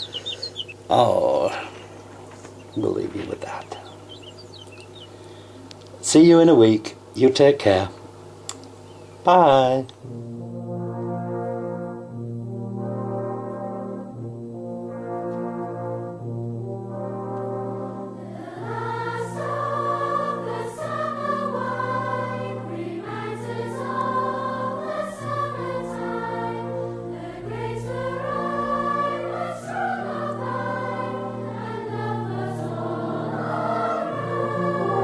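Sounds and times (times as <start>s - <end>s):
sustained low notes: 10.0s - 35.0s
choir singing: 17.1s - 35.0s.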